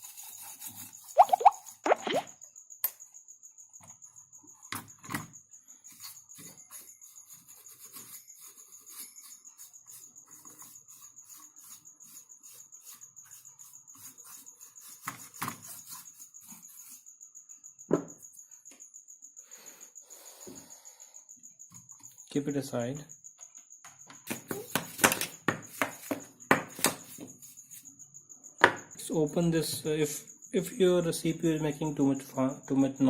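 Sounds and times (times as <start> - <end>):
brush scratching computer parts: 0.0 - 1.8, 5.9 - 17.1, 26.8 - 28.0.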